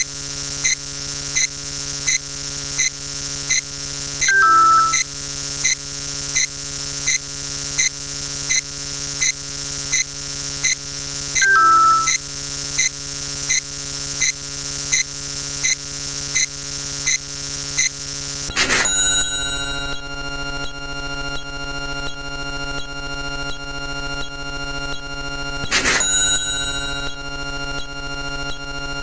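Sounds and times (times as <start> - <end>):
falling two-note beep: 4.2 - 5.1, 11.4 - 12.2, 18.5 - 20.8, 25.6 - 28.7
ringing electronic tones: 4.2 - 5.1, 11.4 - 12.2, 18.5 - 29.0
sharp electronic clicks: 4.2 - 5.1, 11.4 - 12.2, 18.5 - 20.8, 24.2 - 28.6
electronic buzzing hum: 17.8 - 29.0
noisy electronic burst: 18.5 - 20.0, 25.6 - 27.2.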